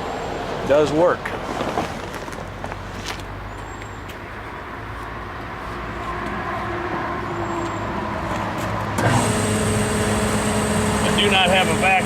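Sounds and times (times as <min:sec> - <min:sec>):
planer running: 0:09.0 - 0:12.0
high whine: 0:09.1 - 0:12.0.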